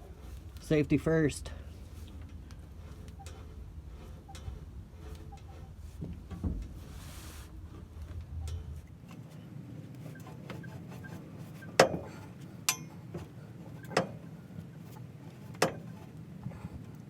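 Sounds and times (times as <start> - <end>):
pipe cutter ticking: 2.4 - 5.7.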